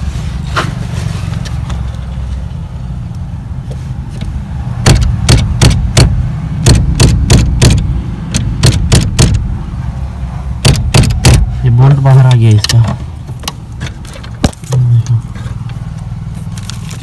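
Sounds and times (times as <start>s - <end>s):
steering column knocking: 4.8s - 9.4s, 10.6s - 11.5s.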